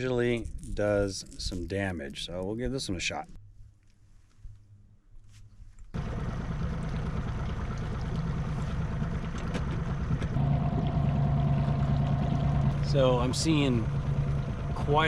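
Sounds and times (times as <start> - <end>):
wind: 0.0 - 15.0
outboard motor running: 6.0 - 15.0
water rushing: 6.0 - 15.0.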